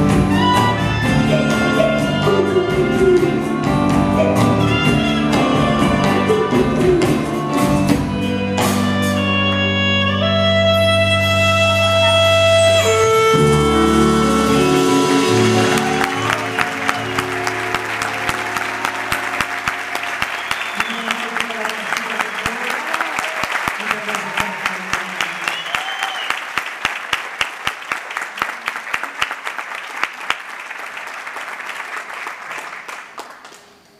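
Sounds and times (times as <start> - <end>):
guitar strumming: 0.0 - 20.2
violin: 0.0 - 21.6
audience applauding: 13.3 - 33.9
loud evenly spaced claps: 15.7 - 33.9.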